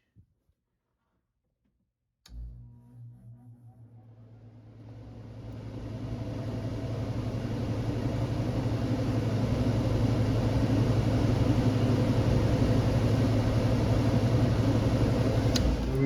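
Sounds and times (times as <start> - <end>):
blower fan motor humming: 5.0 - 16.0.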